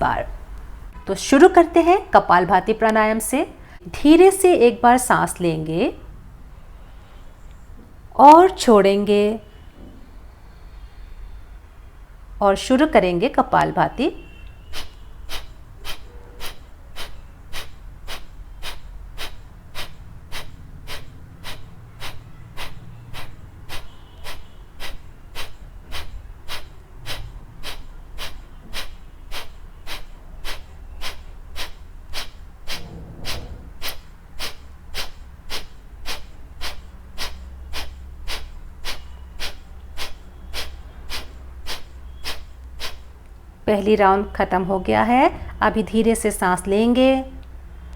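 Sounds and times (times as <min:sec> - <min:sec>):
forceful nasal exhalations: 0:14.3 - 0:43.5.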